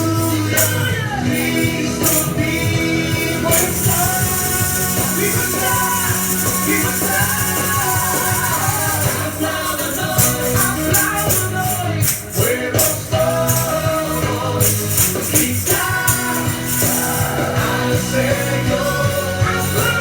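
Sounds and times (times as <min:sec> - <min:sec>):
worship song with band: 0:00.0 - 0:20.0.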